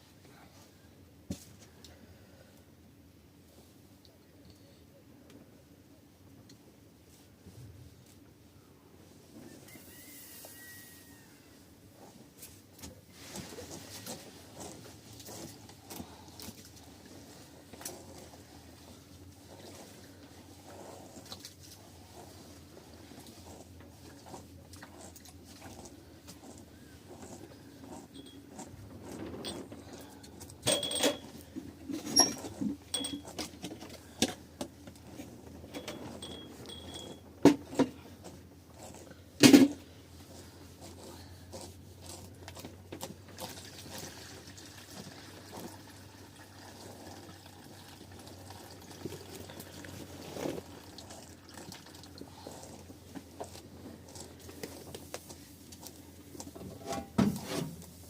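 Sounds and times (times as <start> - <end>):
low background noise: 0.0 - 58.0
knocks and clinks of objects: 28.0 - 34.4, 35.6 - 38.0.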